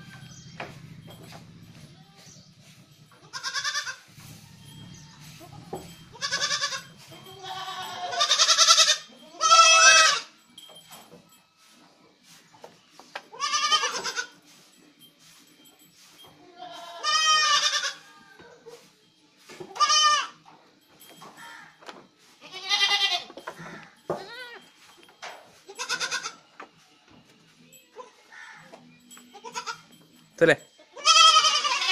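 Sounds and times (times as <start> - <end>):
goats bleating: 3.2 - 4.1, 5.4 - 10.3, 13.3 - 14.4, 16.5 - 18.2, 19.7 - 20.4, 22.4 - 24.6, 25.7 - 26.4, 29.3 - 29.9, 30.9 - 31.9.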